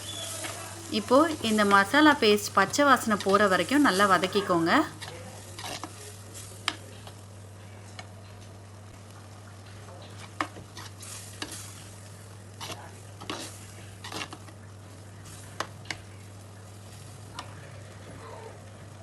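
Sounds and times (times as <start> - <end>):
paste frying in oil: 0.0 - 7.3, 10.0 - 17.6.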